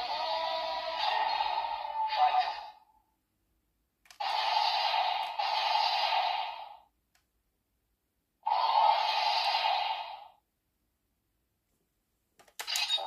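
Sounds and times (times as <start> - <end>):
toy speaker hissing bursts: 8.4 - 10.4.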